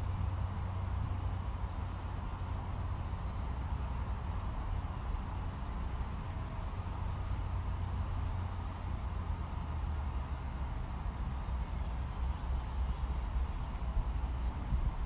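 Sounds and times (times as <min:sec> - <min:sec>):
low outdoor rumble: 0:00.0 - 0:15.0
faint high bird chirps: 0:02.9 - 0:03.5.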